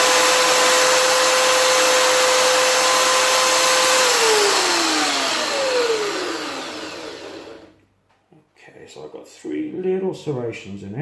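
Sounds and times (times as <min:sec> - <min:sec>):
electric drill whining: 0:00.0 - 0:07.8.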